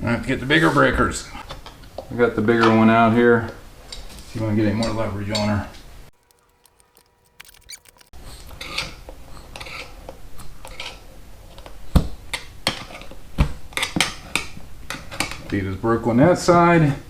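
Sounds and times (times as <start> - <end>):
scraping and clicking: 6.1 - 8.2.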